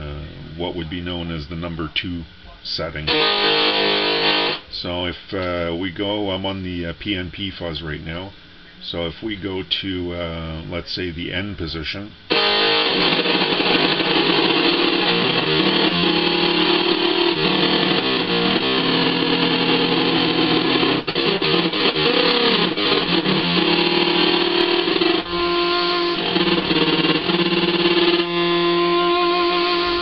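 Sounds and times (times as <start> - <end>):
distorted electric guitar: 3.0 - 4.8, 12.3 - 30.0.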